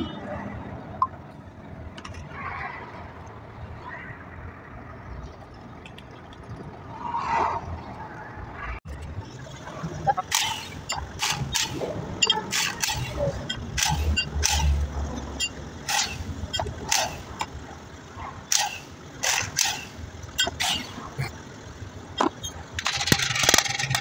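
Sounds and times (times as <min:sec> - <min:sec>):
metal tools clanking: 0:10.2 - 0:17.5, 0:22.2 - 0:24.0.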